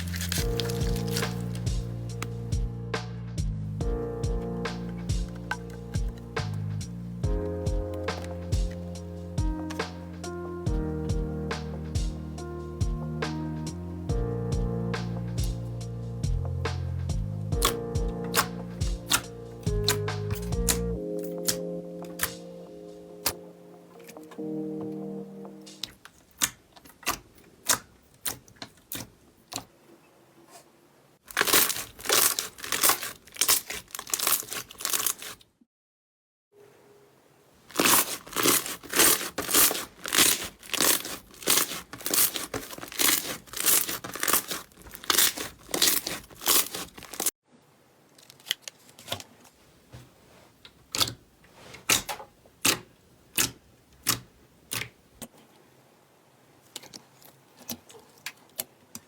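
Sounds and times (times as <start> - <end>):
slime popping and crackling: 0.0 - 2.3, 17.6 - 20.8, 31.3 - 35.4, 37.7 - 47.3.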